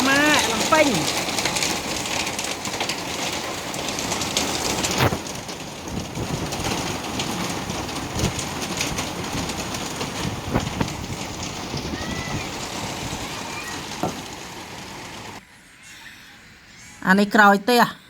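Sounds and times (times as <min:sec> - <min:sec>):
hail pelting down: 0:00.0 - 0:15.4
hailstones ticking on surfaces: 0:00.0 - 0:15.4
loud knock: 0:14.0 - 0:14.4.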